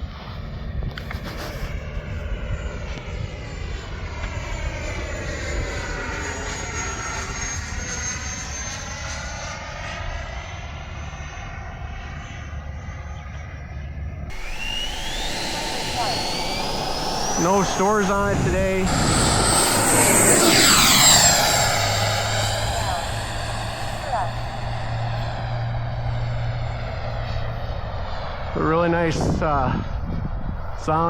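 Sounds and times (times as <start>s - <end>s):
model jet fan whining past: 14.3s - 31.0s.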